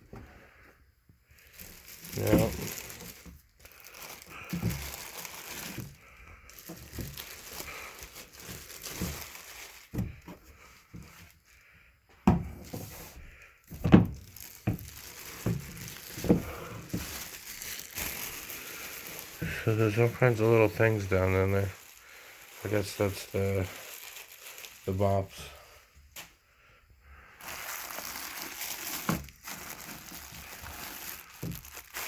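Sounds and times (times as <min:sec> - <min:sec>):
plastic packaging crinkling: 0:01.3 - 0:11.8, 0:12.5 - 0:25.5, 0:27.3 - 0:32.0
plastic parts knocking: 0:04.1 - 0:07.4, 0:08.4 - 0:11.2, 0:12.2 - 0:13.0, 0:13.7 - 0:18.4.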